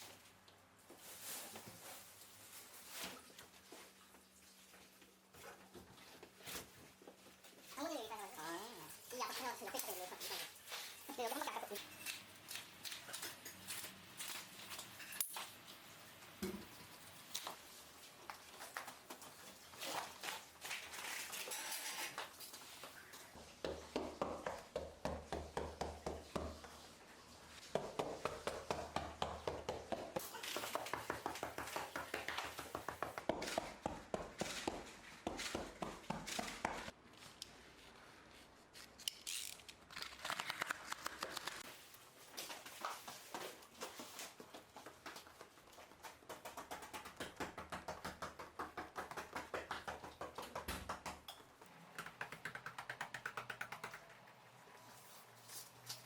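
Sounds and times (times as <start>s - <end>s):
foam mats rustling and scraping: 26.2s - 39.1s
quick light taps and clicks: 46.3s - 54.2s.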